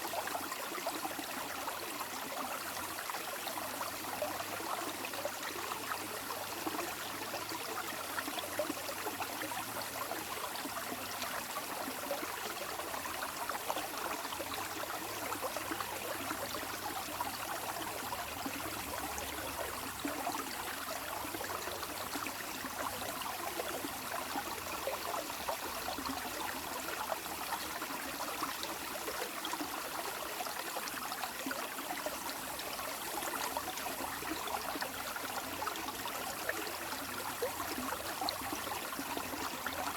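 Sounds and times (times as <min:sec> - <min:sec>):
running water babbling: 0:00.0 - 0:39.9.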